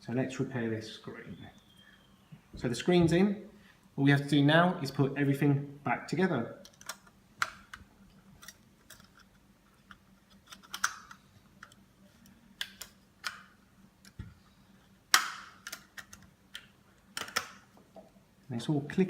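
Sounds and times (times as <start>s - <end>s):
plastic and metal parts clicking: 6.6s - 11.8s, 15.1s - 17.6s.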